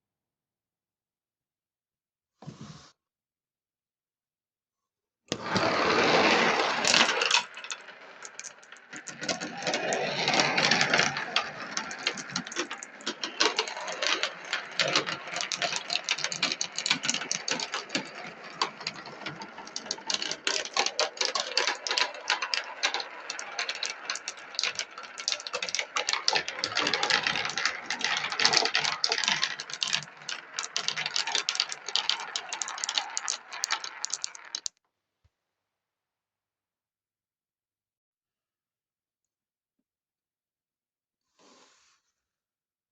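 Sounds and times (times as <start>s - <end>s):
glass marbles rolling on track: 5.3s - 34.8s.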